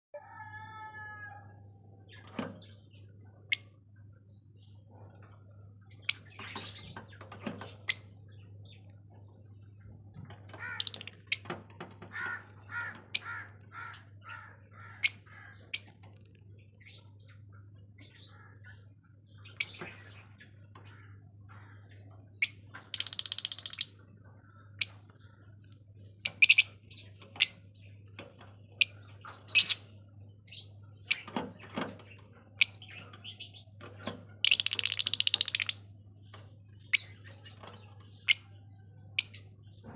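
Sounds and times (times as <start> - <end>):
lovebirds chirping: 10.5 - 11.5, 16.6 - 31.4, 34.4 - 39.9.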